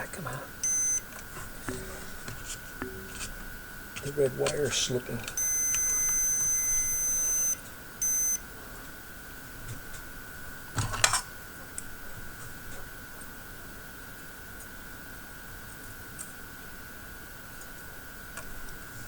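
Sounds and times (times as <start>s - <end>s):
faint steady whine: 0.0s - 19.0s
electronic beeper beeping: 0.6s - 1.1s, 5.3s - 8.4s
handling noise: 0.6s - 7.5s.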